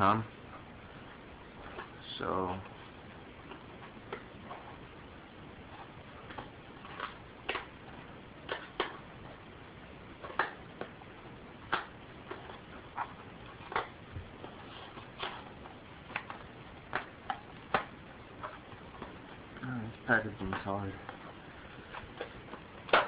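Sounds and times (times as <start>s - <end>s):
faint steady hiss: 0.0s - 23.0s.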